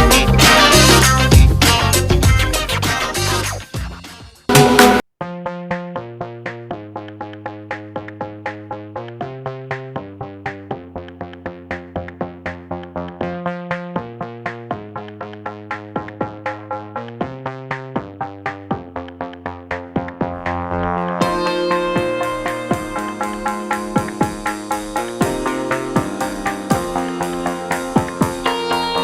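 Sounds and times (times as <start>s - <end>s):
drum-machine beat: 0.0s - 5.1s, 5.7s - 29.0s
held synthesizer chords: 4.5s - 9.6s, 16.3s - 29.0s.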